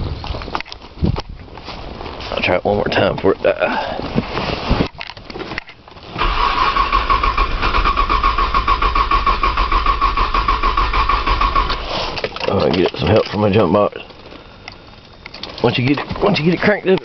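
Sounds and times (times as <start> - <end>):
car engine cranking: 5.1 - 14.4.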